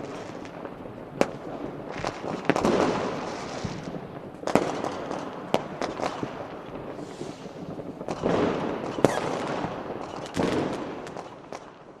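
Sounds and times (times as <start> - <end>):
fireworks bangs and crackling: 0.0 - 12.0
loud firework crack: 0.0 - 12.0.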